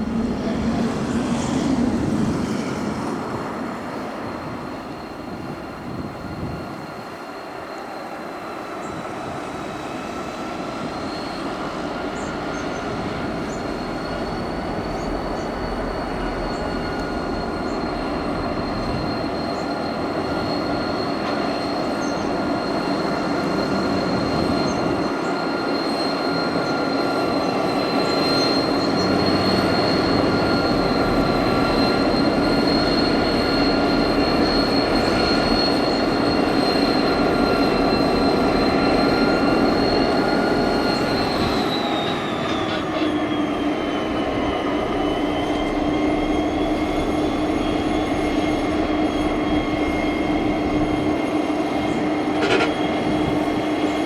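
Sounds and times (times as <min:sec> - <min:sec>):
train rumbling past: 0:00.0 - 0:54.0
wheels squealing: 0:08.5 - 0:54.0.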